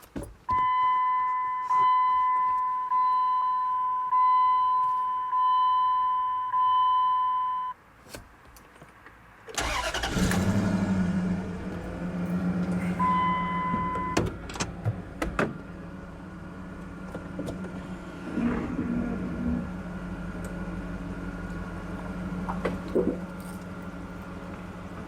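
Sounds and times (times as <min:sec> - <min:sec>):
car engine idling: 0:09.6 - 0:25.0.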